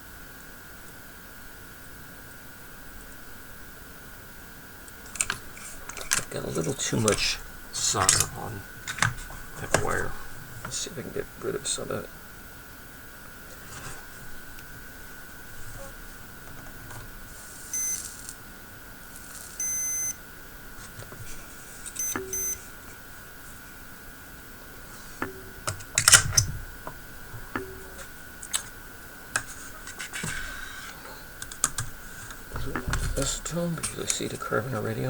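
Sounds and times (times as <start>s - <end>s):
steady high whine: 0.0s - 35.0s
electronic beeps: 17.7s - 18.2s, 19.6s - 20.2s, 22.0s - 22.7s.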